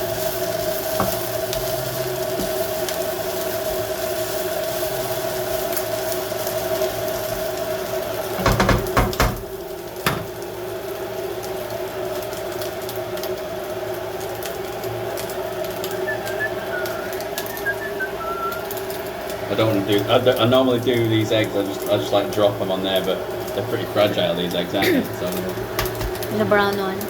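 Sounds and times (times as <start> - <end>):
vegetables frying in a pan: 0.0 - 27.0
utensil knocking on pan: 8.4 - 10.3, 25.7 - 26.2
bird chirping: 15.9 - 18.6.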